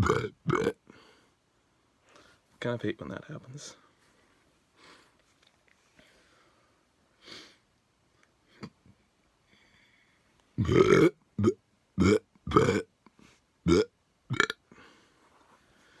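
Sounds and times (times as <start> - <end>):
person burping: 0.0 - 0.8, 10.6 - 12.9, 13.7 - 14.7.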